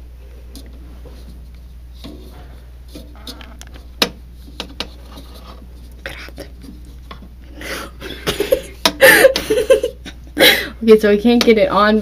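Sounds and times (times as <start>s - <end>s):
rubbing and scraping: 0.4s - 7.4s.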